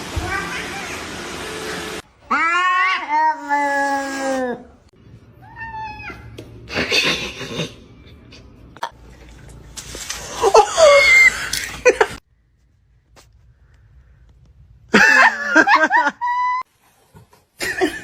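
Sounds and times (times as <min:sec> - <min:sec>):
people laughing: 0:15.0 - 0:16.6.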